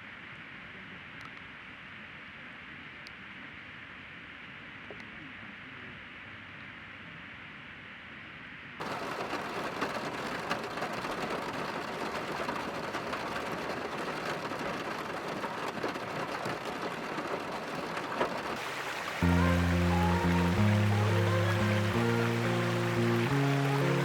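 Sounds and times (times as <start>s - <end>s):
heavy rain falling: 8.8s - 24.0s.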